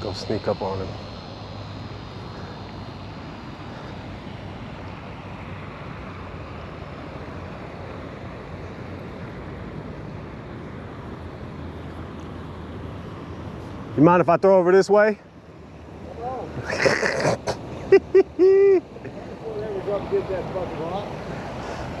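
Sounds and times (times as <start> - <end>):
low hum: 0.0 - 13.9.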